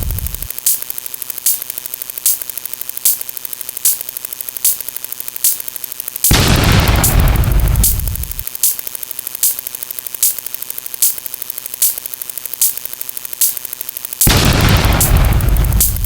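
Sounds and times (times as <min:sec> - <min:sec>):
rapid ticking: 0:00.0 - 0:16.0
sharp click: 0:00.0 - 0:16.0
loud noisy blast: 0:06.3 - 0:08.4, 0:14.3 - 0:16.0.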